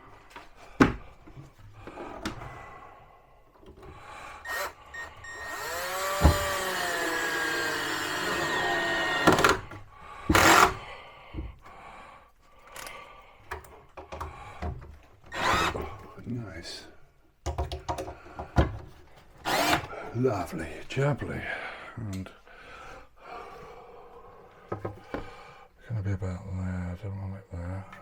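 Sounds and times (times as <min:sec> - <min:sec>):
drill driver motor running: 0:04.4 - 0:09.7, 0:10.3 - 0:10.8, 0:15.3 - 0:15.8, 0:19.5 - 0:19.8
knocks and clicks: 0:17.4 - 0:18.8.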